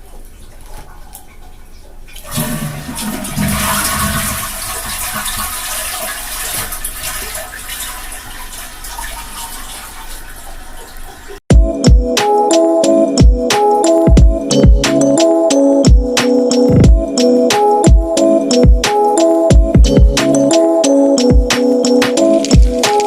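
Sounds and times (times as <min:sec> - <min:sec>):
toilet flushing: 0:02.1 - 0:11.4.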